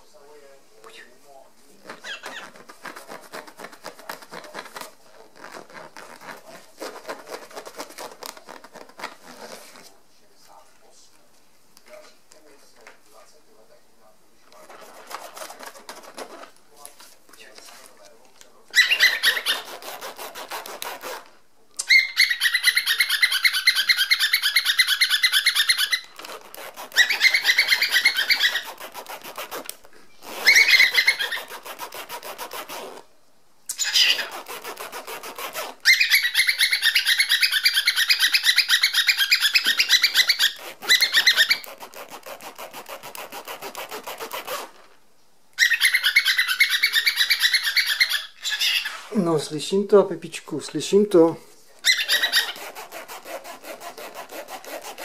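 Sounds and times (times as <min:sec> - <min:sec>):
cockatiel chirping and whistling: 0:02.0 - 0:02.5, 0:18.8 - 0:19.7, 0:21.8 - 0:26.1, 0:26.9 - 0:28.8, 0:30.4 - 0:31.5, 0:33.7 - 0:34.5, 0:35.8 - 0:41.7, 0:45.6 - 0:49.0, 0:51.8 - 0:52.6
zipper opening and closing: 0:05.3 - 0:09.8, 0:28.3 - 0:33.1, 0:40.6 - 0:44.9.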